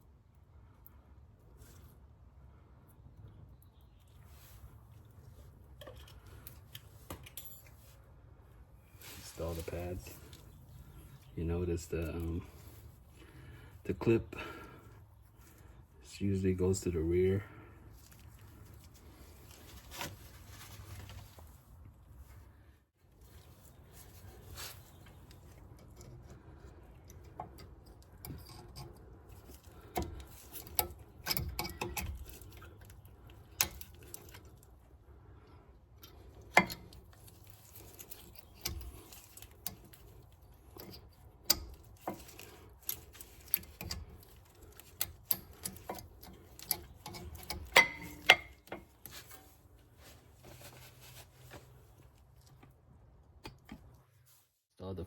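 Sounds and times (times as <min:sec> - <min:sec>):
metallic clicks of brake pads: 0:25.0 - 0:34.8, 0:36.0 - 0:49.6, 0:51.6 - 0:54.1.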